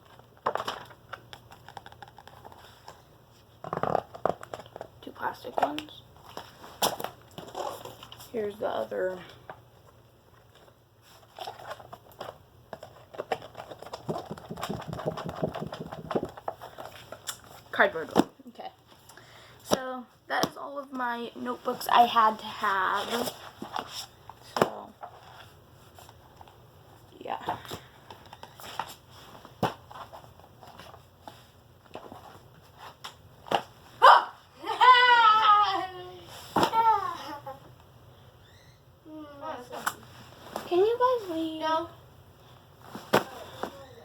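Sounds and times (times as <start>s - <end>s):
clicks and taps of notebooks: 0.4s - 3.0s, 12.1s - 17.4s
knocks and taps of objects: 14.0s - 16.6s.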